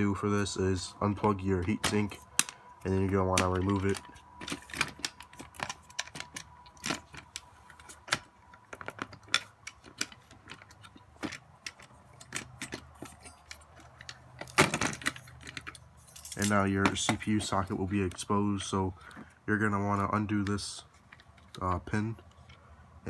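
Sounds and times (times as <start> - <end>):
heatsink clicking and rattling: 0.2 - 18.3.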